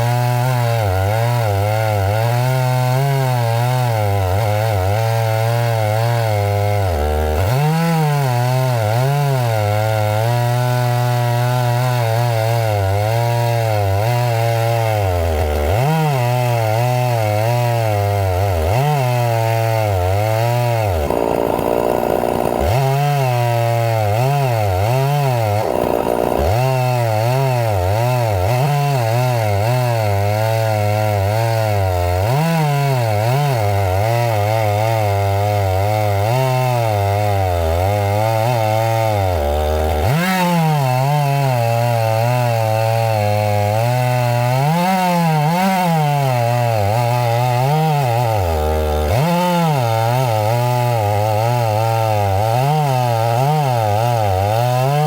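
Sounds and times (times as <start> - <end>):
chainsaw cutting wood: 0.0 - 55.0.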